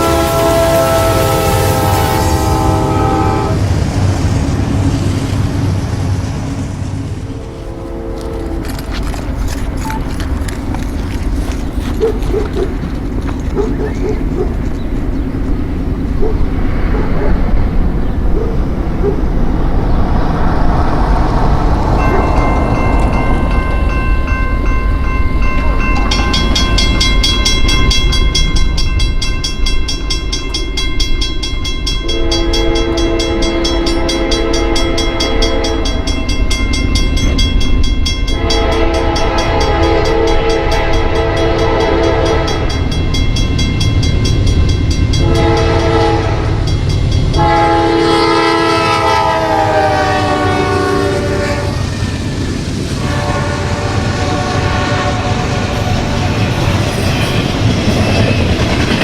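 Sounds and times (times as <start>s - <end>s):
locomotive horn blasts: 0.0s - 3.7s, 7.2s - 8.7s, 32.0s - 36.1s, 38.3s - 42.8s, 45.1s - 46.7s, 47.3s - 52.0s, 53.0s - 56.2s
passing train rumble: 0.0s - 59.0s.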